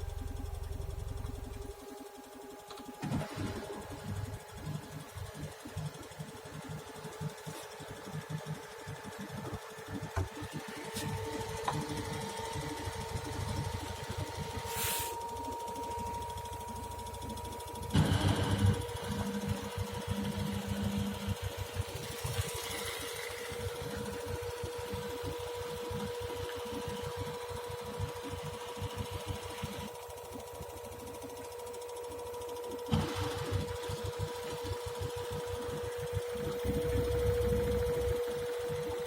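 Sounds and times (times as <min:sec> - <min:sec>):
washing machine humming: 0:00.0 - 0:39.0.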